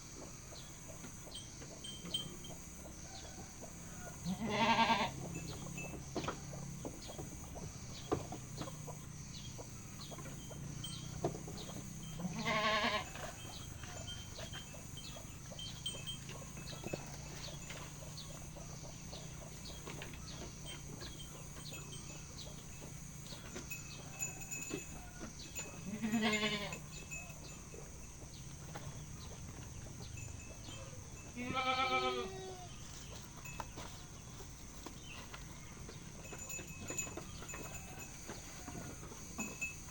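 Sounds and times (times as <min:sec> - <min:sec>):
goat bleating: 0:04.2 - 0:05.4, 0:12.2 - 0:13.3, 0:25.8 - 0:26.8, 0:31.4 - 0:32.8.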